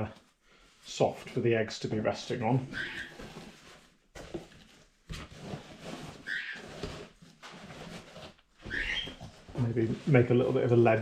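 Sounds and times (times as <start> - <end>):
cloth rustling in cardboard box: 2.8 - 11.0.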